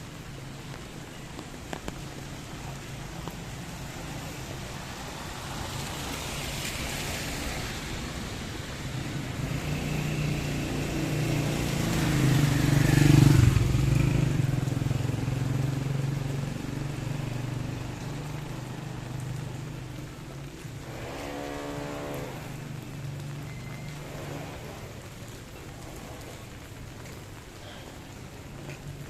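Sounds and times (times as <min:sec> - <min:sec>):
vehicle passing by: 0:05.2 - 0:19.7, 0:20.8 - 0:25.1.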